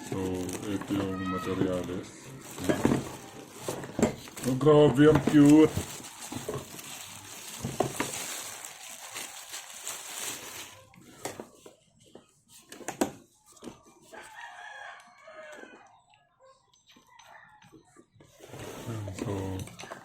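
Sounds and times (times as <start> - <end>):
packaging rustling: 0.0 - 11.5
rooster crowing: 14.1 - 15.9.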